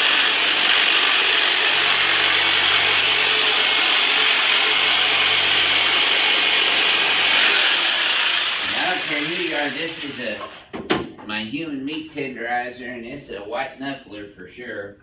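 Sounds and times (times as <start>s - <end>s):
electric massage tool motor: 0.0s - 10.2s.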